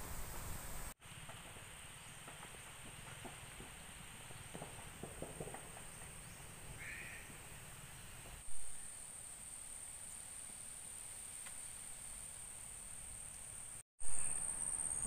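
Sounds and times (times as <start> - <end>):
high-pitched insect drone: 14.1 - 15.0.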